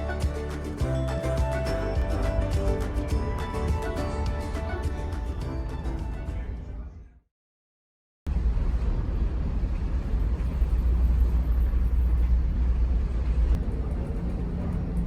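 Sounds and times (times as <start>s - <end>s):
ferry engine low rumble: 8.3s - 15.0s.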